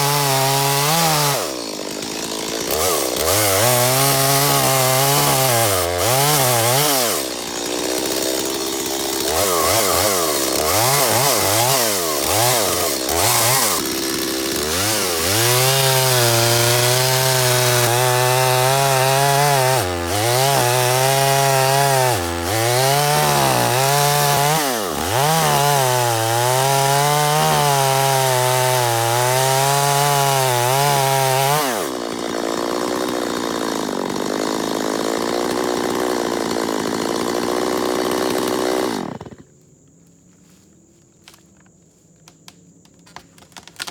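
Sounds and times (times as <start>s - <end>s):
chainsaw cutting wood: 0.0s - 39.6s, 42.3s - 43.9s.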